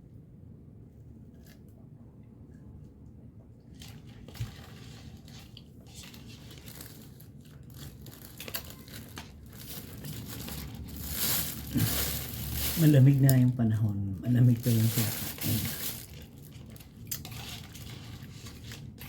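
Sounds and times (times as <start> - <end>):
shaved ice crunching: 4.0 - 19.0.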